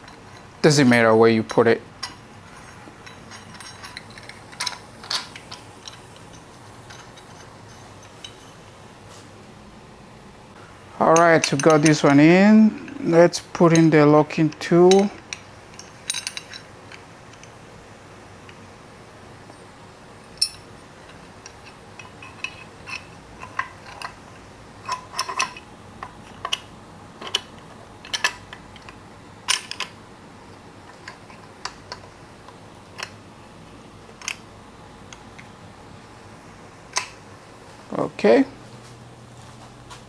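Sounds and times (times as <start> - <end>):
metal tools clinking: 0.0 - 8.8, 11.0 - 18.7, 20.2 - 30.0, 34.1 - 34.5.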